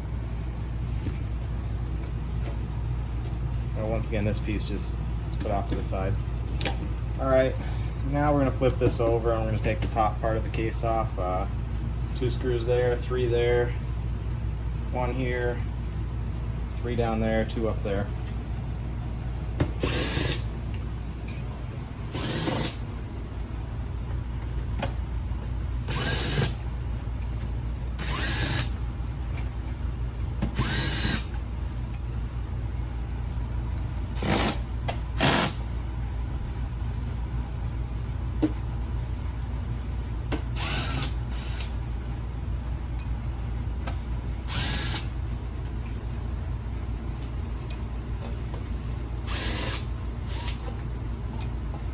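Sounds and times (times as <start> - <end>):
steady low hum: 0.0 - 51.9
power screwdriver whirring: 19.8 - 20.5, 22.1 - 22.8, 25.9 - 26.6, 28.0 - 28.8, 30.5 - 31.3, 35.2 - 35.6, 40.6 - 41.8, 44.5 - 45.1, 49.3 - 50.6.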